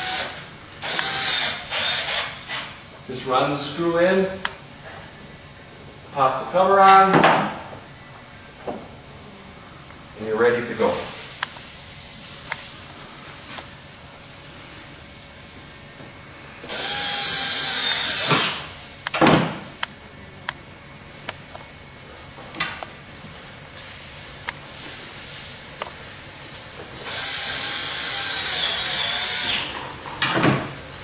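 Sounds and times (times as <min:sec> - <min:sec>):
screw gun driving screws: 0:00.0 - 0:02.7, 0:27.0 - 0:29.7.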